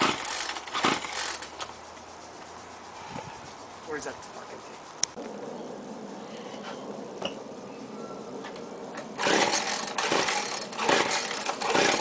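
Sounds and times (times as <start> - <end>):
chainsaw recoil starter pulls: 0.0 - 1.7, 9.2 - 12.0.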